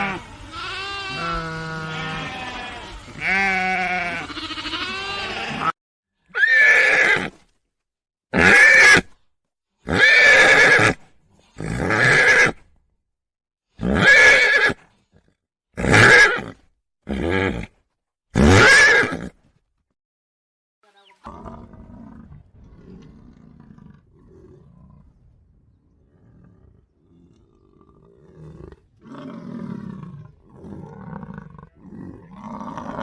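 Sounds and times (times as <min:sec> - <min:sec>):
farm animal bleating: 0:00.0 - 0:06.9.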